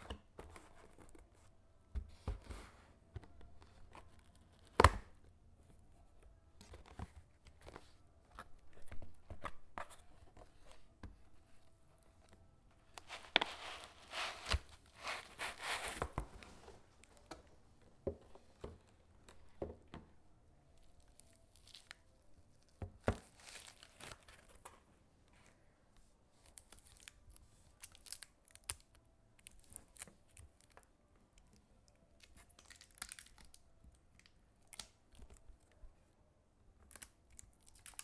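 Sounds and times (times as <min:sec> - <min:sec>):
wrapping rustling: 0:13.0 - 0:17.0.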